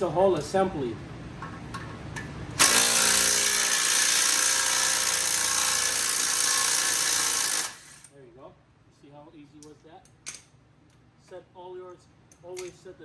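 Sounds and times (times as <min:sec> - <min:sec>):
power drill whine: 0:02.6 - 0:08.1.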